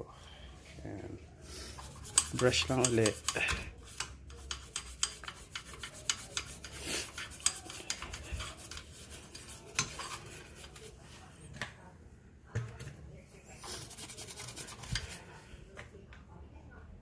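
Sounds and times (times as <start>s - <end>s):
toothbrush scrubbing metal: 1.6s - 11.0s, 13.6s - 15.3s.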